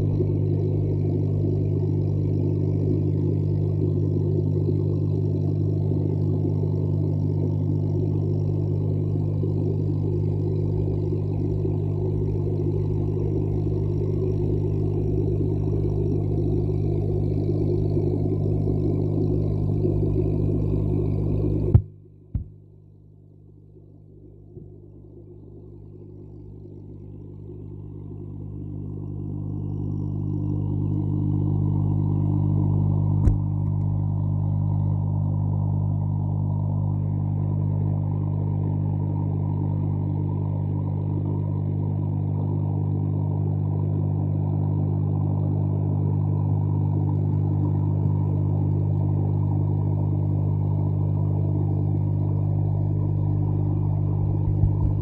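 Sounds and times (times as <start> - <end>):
low motor-like rumble: 0.0 - 55.0
sharp click: 33.2 - 33.9.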